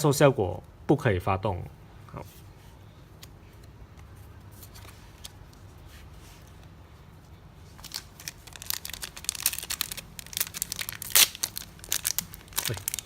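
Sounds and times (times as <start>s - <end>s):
foil wrapper crinkling and tearing: 7.8s - 13.0s.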